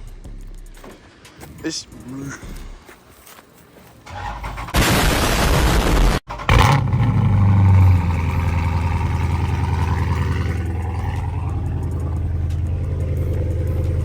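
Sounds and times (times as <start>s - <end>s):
car engine starting and idling: 4.1s - 14.0s.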